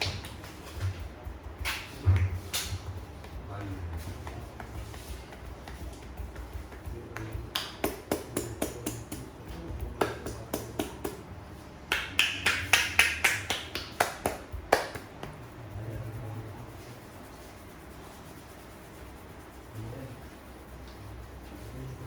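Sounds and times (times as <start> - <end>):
hands tapping on head: 0.0 - 11.3, 11.9 - 15.4.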